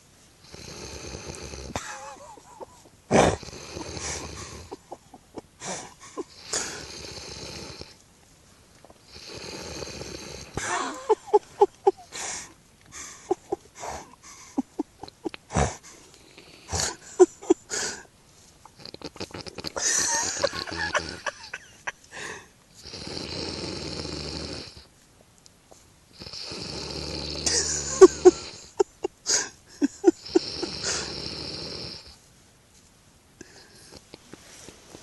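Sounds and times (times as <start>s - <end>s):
person snoring: 0.4s - 2.5s, 3.1s - 4.8s, 5.6s - 8.0s, 9.1s - 12.5s, 15.5s - 18.0s, 18.8s - 21.6s, 22.2s - 24.9s, 26.2s - 32.2s.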